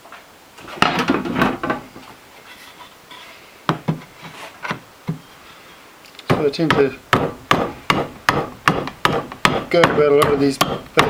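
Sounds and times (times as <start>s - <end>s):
wood being chopped: 6.3s - 11.0s.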